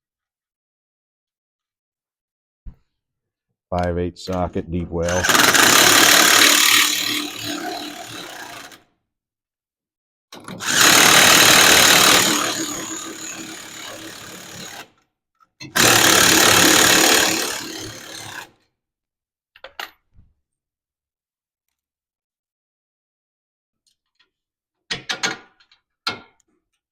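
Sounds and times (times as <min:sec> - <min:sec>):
power tool running nuts down: 0:05.1 - 0:08.8, 0:10.4 - 0:14.9, 0:15.7 - 0:18.5.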